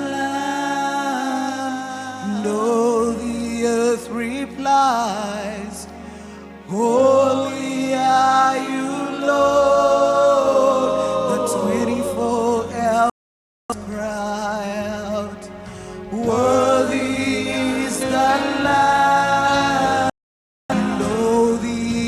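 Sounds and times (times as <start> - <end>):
person singing gospel: 0.0 - 22.0
bass notes: 13.7 - 20.1.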